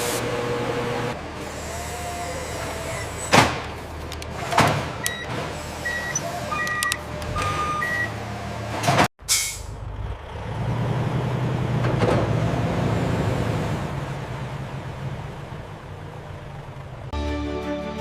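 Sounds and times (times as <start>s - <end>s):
factory machinery humming: 0.0s - 17.2s
short electronic beeps: 5.1s - 8.1s.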